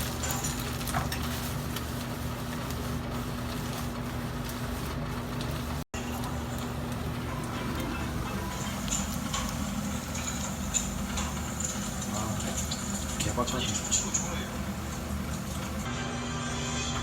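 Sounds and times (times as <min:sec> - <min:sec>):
stirring clicks: 0:00.0 - 0:15.9
onions sizzling in a pan: 0:06.0 - 0:15.9.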